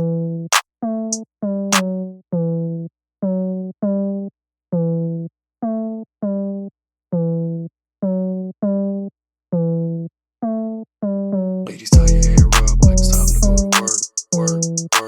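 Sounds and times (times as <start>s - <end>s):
synthesizer chords: 12.0s - 13.7s.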